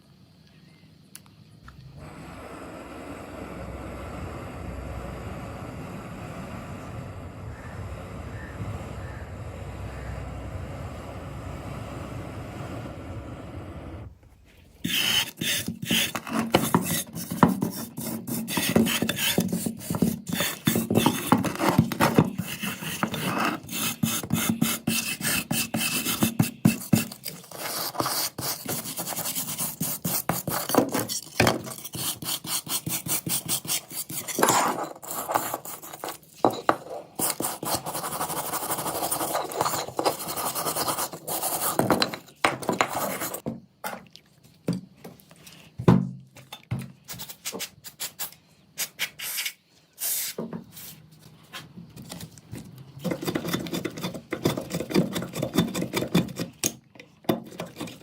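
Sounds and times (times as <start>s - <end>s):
hand rasp rubbing metal: 14.8s - 36.2s, 37.2s - 43.4s.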